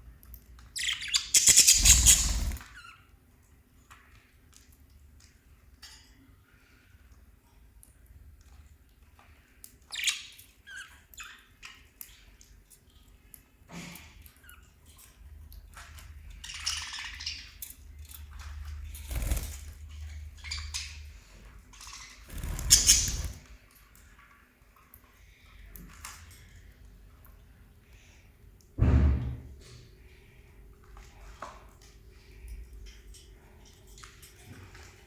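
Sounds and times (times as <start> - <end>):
parrots chirping: 0.8 - 2.9, 21.8 - 23.5.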